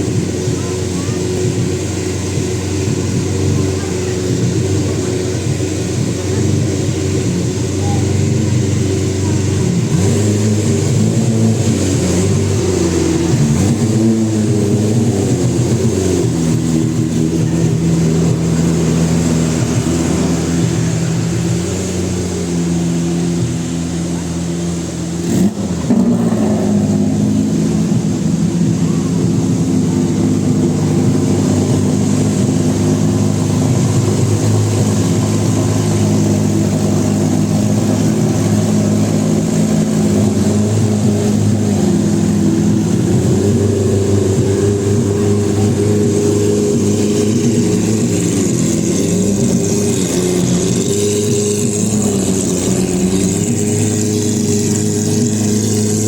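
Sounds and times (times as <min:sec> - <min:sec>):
car engine idling: 0:00.0 - 0:56.0.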